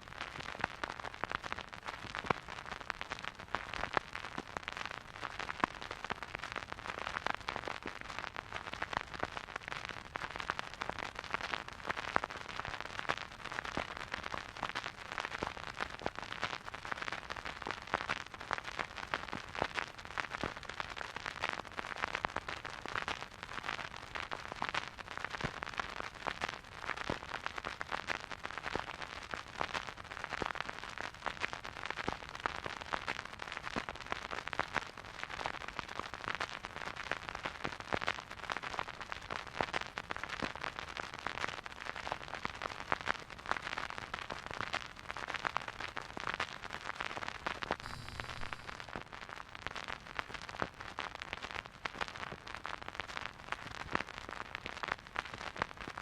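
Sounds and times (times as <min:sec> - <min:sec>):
vinyl record crackle: 0:00.0 - 0:56.0
steady hiss: 0:47.8 - 0:49.0.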